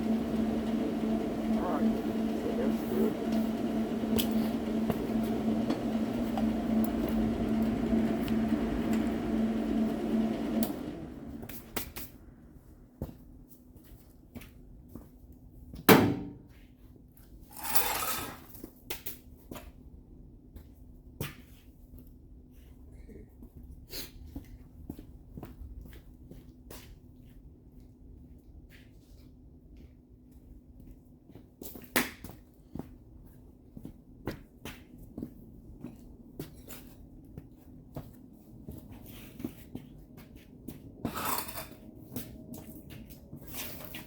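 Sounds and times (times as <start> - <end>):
low buzzing hum: 0.0 - 11.9.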